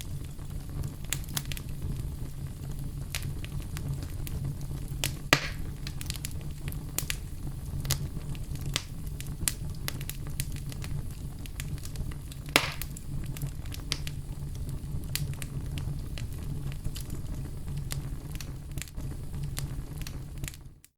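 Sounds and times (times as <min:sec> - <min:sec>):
fire pops and snaps: 0:00.0 - 0:20.9
low rumble of flames: 0:00.0 - 0:20.9
wood fire crackling: 0:00.0 - 0:20.9.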